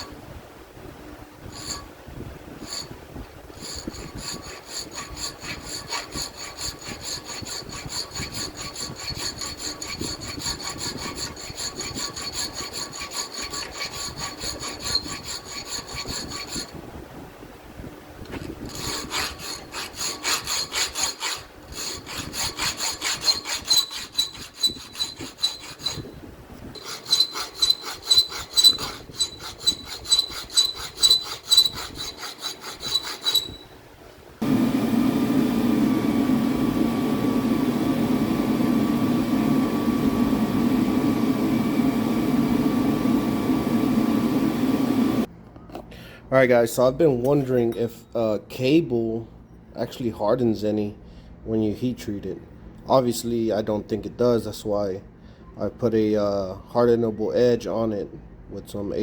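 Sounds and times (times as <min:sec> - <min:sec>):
abrasive scraping steel knife blade: 0:01.5 - 0:01.9, 0:18.7 - 0:26.1, 0:26.8 - 0:33.7.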